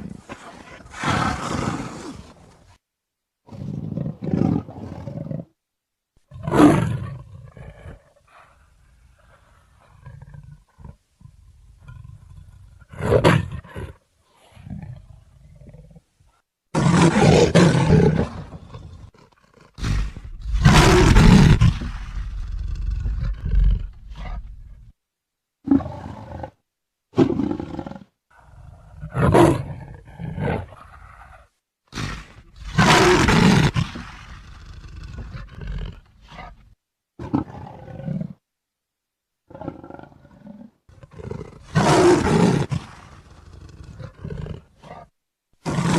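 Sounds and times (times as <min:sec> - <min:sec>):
leopard roaring: 0:00.0 - 0:02.3, 0:16.7 - 0:24.9, 0:27.2 - 0:36.6, 0:39.5 - 0:45.9.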